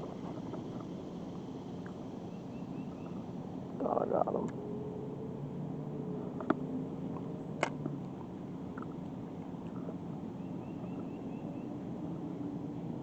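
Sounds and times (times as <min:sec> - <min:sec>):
bird chirping: 0:02.2 - 0:03.2, 0:10.4 - 0:11.8.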